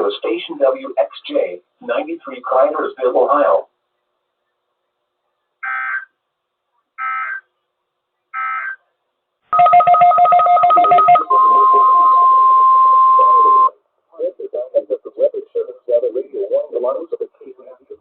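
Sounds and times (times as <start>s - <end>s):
steady warning alarm tone: 9.6s - 13.7s.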